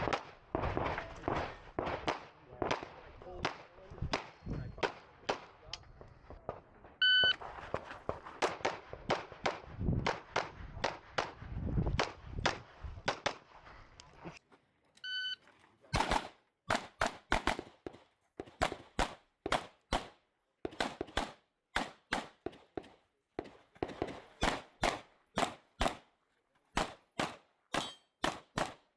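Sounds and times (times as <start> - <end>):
pistol shots: 16.0 - 26.1, 26.8 - 28.9.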